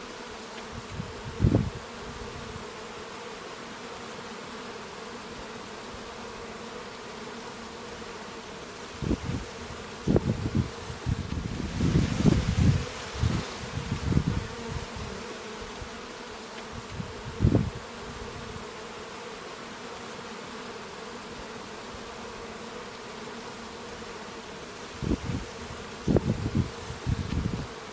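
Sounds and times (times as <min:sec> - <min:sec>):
bees buzzing: 0:00.0 - 0:27.9.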